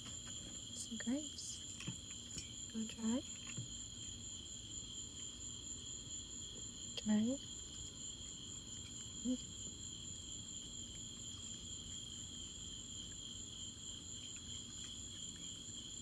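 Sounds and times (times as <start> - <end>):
night insects trilling: 0.0 - 16.0.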